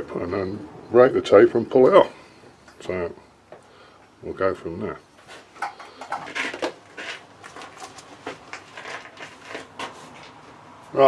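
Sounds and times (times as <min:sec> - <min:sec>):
objects being handled: 0:05.2 - 0:10.6.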